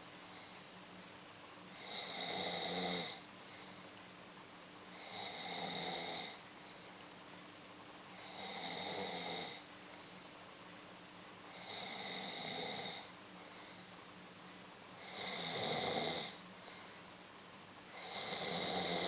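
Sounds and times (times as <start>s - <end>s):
quiet breathing: 0.0s - 4.1s, 4.8s - 7.2s, 11.4s - 14.2s, 14.9s - 17.2s
man snoring: 1.8s - 3.2s, 4.9s - 6.4s, 8.2s - 9.6s, 11.5s - 13.1s, 15.0s - 16.4s, 17.9s - 19.0s.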